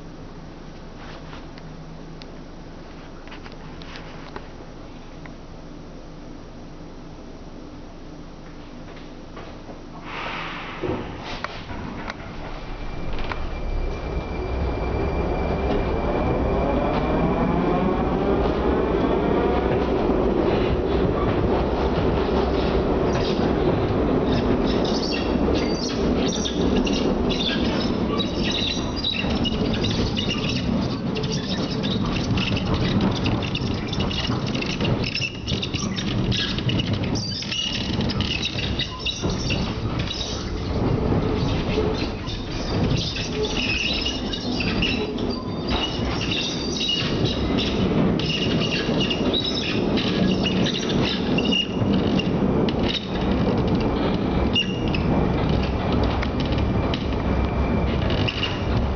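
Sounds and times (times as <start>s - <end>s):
metro car wheels rumbling: 8.5s - 58.9s
high-pitched squeaks and creaks: 24.2s - 58.8s.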